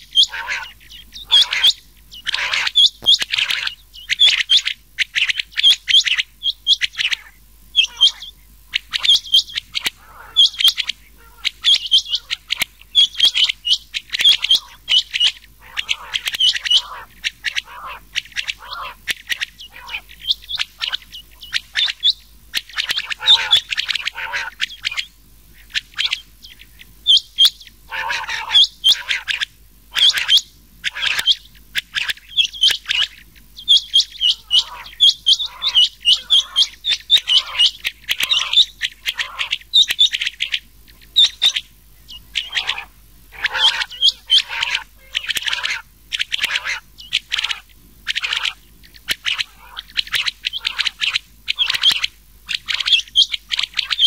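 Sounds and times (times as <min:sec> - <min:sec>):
quails calling: 0:00.0 - 0:54.0.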